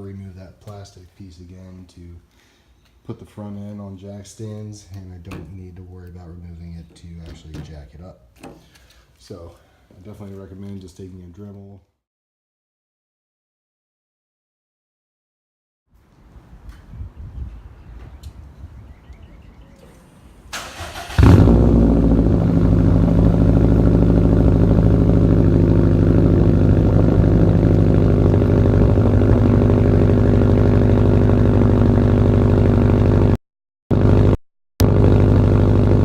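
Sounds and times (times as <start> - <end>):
car engine idling: 20.6 - 33.3, 34.8 - 36.0.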